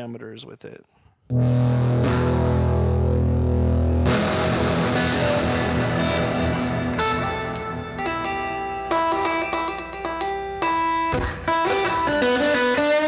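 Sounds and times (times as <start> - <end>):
electric guitar with reverb: 1.3 - 13.0.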